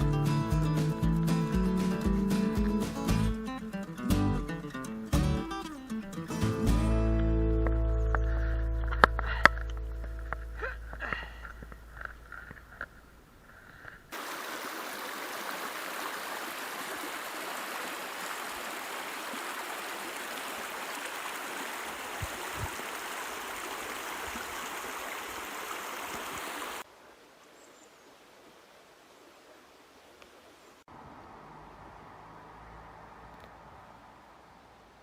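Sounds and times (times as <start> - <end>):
river water rushing over rocks: 14.1 - 26.8.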